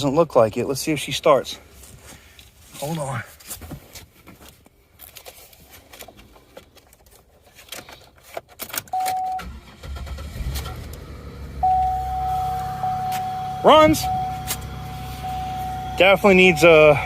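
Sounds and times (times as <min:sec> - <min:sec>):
keys and clicks: 0:06.0 - 0:09.4, 0:11.7 - 0:14.7
car engine starting and running: 0:08.6 - 0:17.0.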